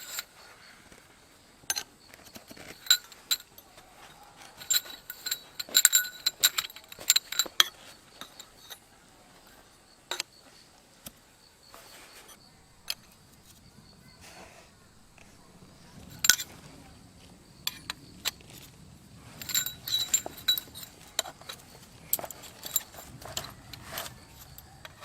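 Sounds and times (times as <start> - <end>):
hard objects clinking: 1.7 - 8.9, 15.0 - 16.9, 17.6 - 25.0.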